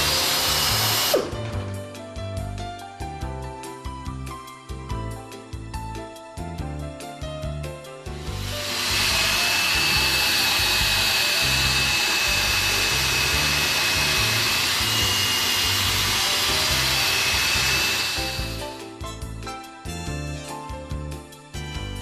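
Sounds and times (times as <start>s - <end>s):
pneumatic air drill whining: 0.0s - 1.4s, 8.2s - 18.9s.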